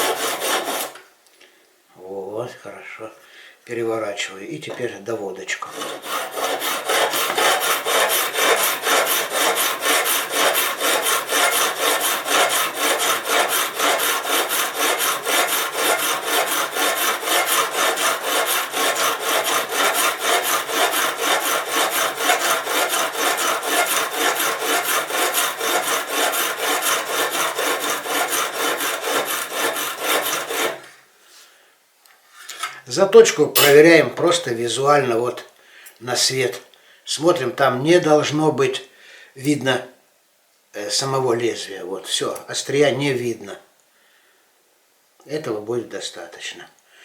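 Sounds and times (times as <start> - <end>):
sharpening stone scraping blade: 33.6 - 33.9.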